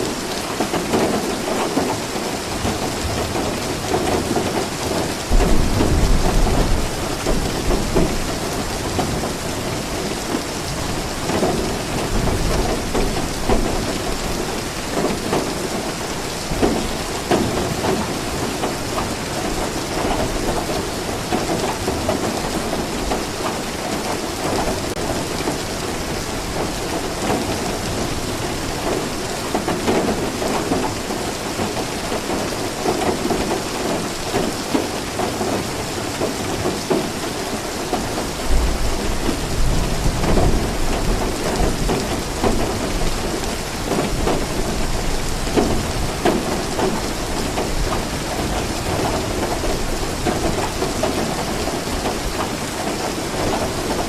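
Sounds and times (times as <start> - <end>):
steady rain: 0.0 - 54.0
thunder rumbling: 2.6 - 14.4.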